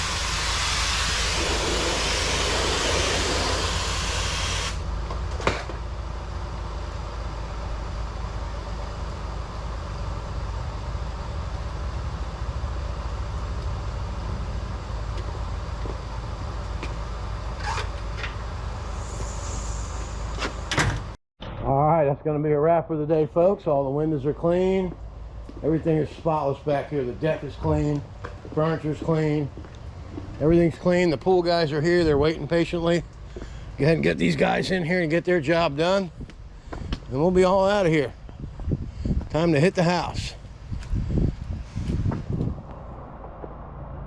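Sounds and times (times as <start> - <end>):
water spray hissing: 0.0 - 4.8
pressure washer engine and pump: 0.0 - 20.8.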